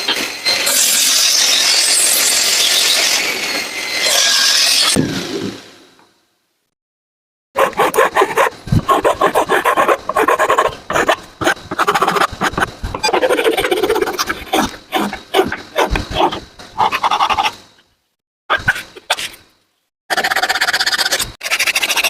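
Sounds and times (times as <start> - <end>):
hand rasping wood: 7.6 - 16.4.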